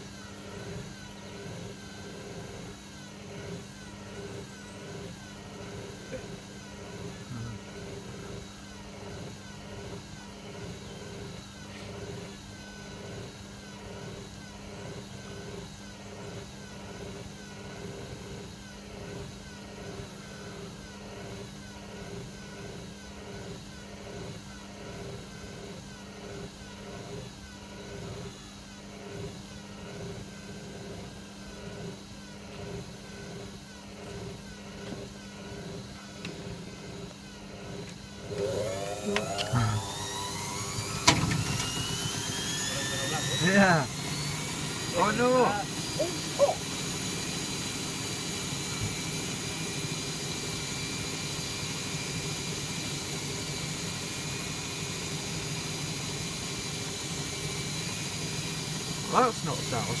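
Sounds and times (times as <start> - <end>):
motor whine rising: 36.2 - 52.1.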